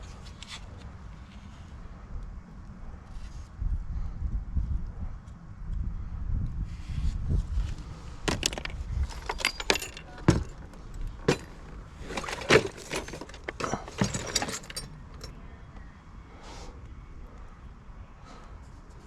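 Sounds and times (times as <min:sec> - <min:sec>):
small hard objects clattering: 0:08.2 - 0:15.3.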